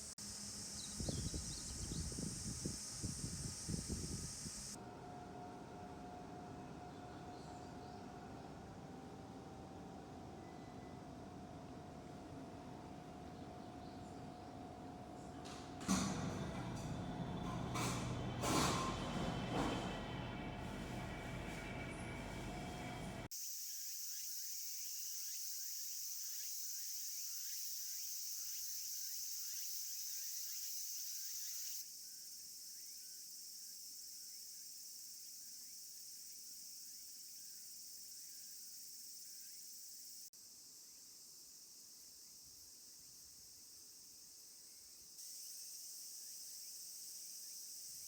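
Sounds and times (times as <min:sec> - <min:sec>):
high-pitched insect chorus: 0:00.0 - 0:04.8, 0:23.3 - 0:48.0.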